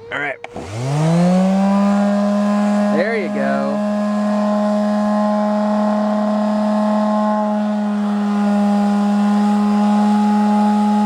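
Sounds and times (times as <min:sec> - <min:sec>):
electric sander on wood: 0:00.0 - 0:11.0.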